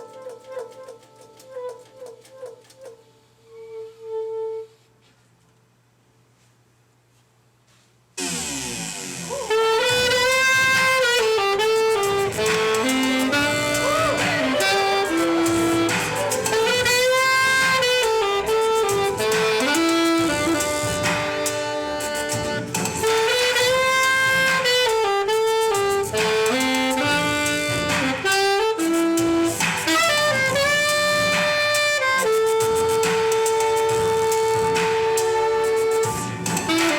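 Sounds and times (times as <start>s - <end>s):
saxophone playing jazz: 0.0s - 4.9s, 8.2s - 36.9s.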